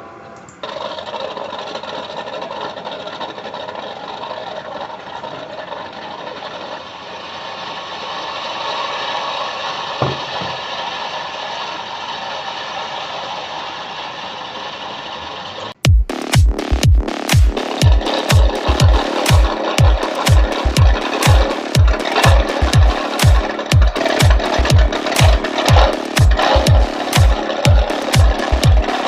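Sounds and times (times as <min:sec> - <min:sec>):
motorboat engine running: 0:00.6 - 0:29.0
short thump: 0:10.0 - 0:10.6.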